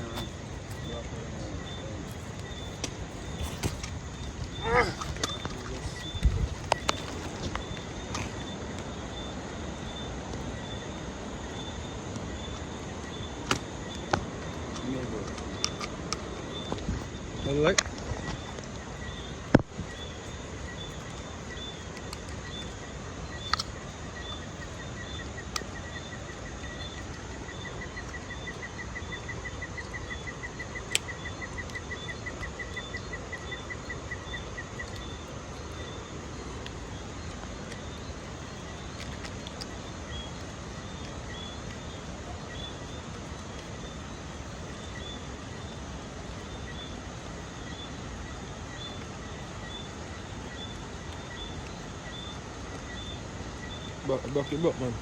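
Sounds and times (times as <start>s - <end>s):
faint even chirping: 0.0s - 55.0s
outdoor background noise: 0.0s - 55.0s
sharp clicks: 23.4s - 24.7s.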